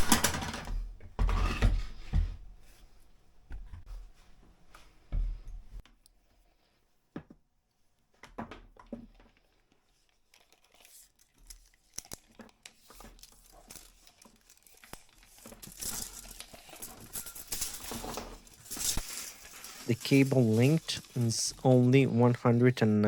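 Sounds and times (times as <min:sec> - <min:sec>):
crinkling rustle: 0:09.2 - 0:23.0.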